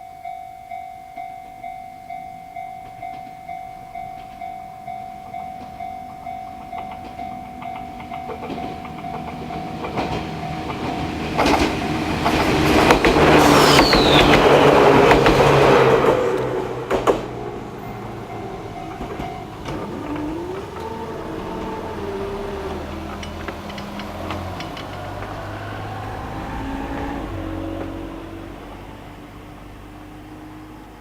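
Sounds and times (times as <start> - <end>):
level crossing alarm ringing: 0.0 - 12.2, 17.4 - 26.4
train passing: 0.2 - 31.0
wheels clicking over rail joints: 2.8 - 29.9
rising whine: 7.2 - 29.8.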